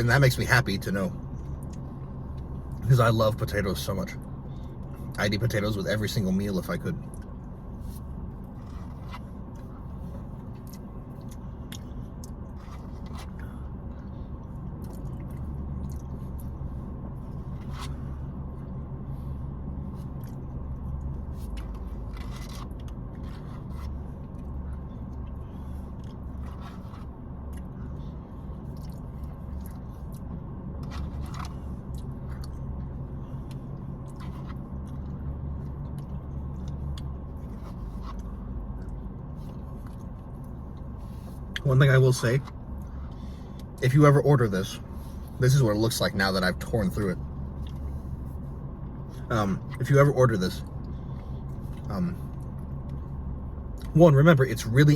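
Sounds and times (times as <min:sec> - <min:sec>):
steady low hum: 0:00.0 - 0:54.9
chewing: 0:08.4 - 0:13.6, 0:14.4 - 0:16.6, 0:20.0 - 0:41.6.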